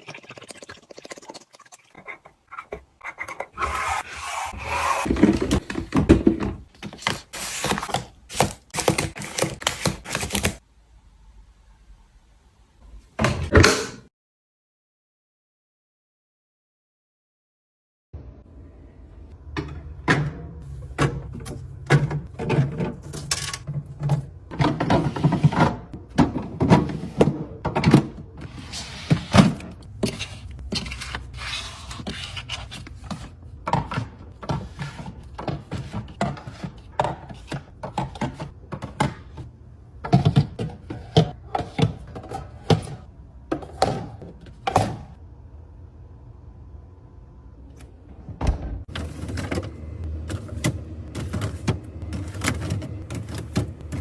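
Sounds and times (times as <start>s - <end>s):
groceries clunking and rattling: 5.0s - 10.6s, 19.4s - 45.2s, 48.4s - 54.0s.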